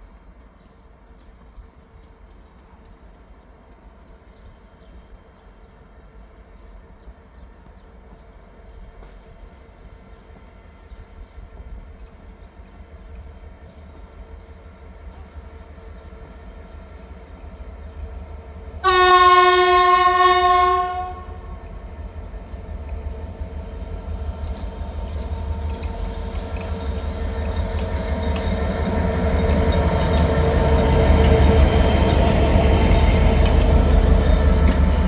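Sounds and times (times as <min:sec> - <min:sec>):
train running noise: 0:00.0 - 0:35.0
train horn blast: 0:18.8 - 0:21.7
sharp clicks: 0:22.9 - 0:23.4, 0:24.0 - 0:32.3.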